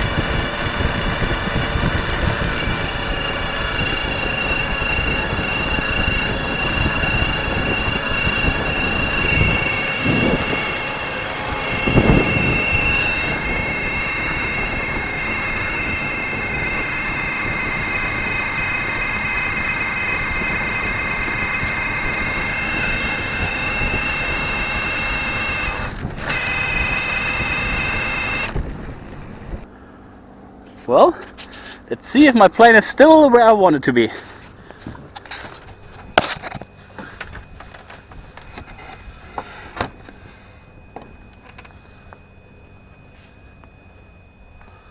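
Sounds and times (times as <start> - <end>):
wind rush on microphone: 0.0 - 29.7
electric bike motor whine: 0.0 - 33.5, 34.2 - 44.9.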